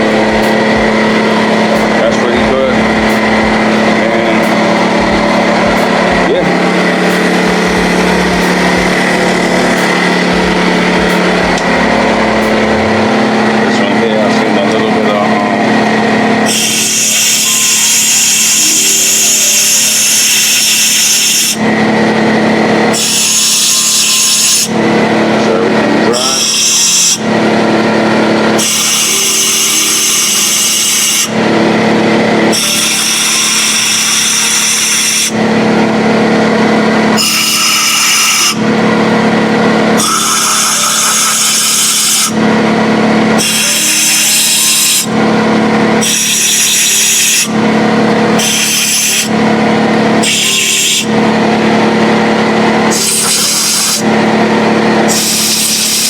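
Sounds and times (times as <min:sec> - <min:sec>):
compressor mechanical hum: 0:00.0 - 0:56.0.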